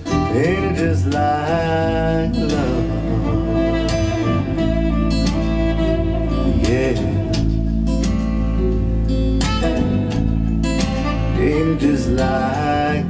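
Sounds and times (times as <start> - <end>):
guitar song over loudspeakers: 0.0 - 13.0
person singing yeah: 0.1 - 7.7, 11.0 - 13.0.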